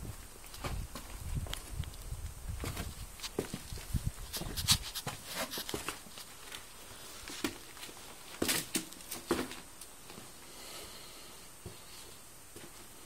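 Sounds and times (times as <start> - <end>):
footsteps and scuffs: 2.6 - 10.3.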